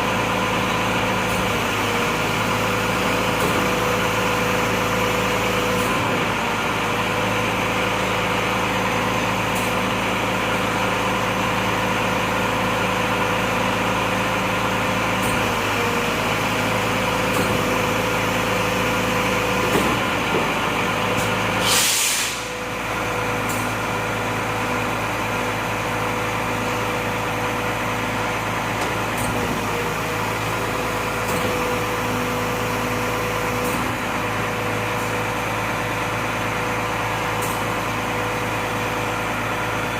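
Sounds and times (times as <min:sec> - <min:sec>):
air brake hiss: 0:21.6 - 0:22.6
diesel truck engine idling: 0:22.2 - 0:39.9.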